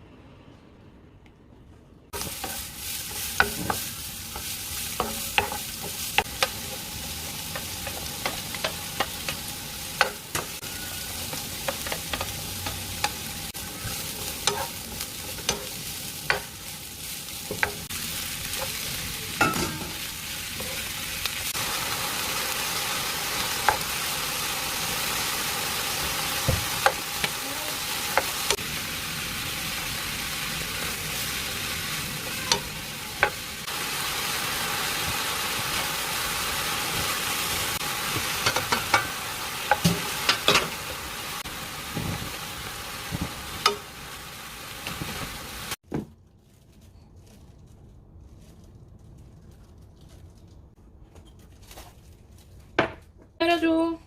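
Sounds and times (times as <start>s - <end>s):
food sizzling in a frying pan: 2.1s - 45.8s.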